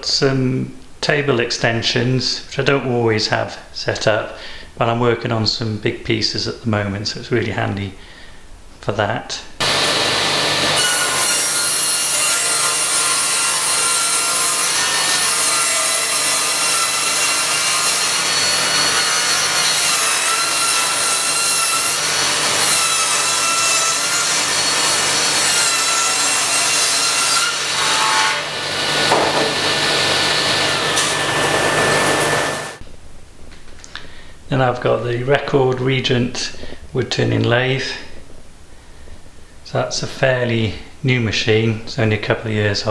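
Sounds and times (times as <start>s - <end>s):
table saw cutting wood: 9.6s - 32.8s.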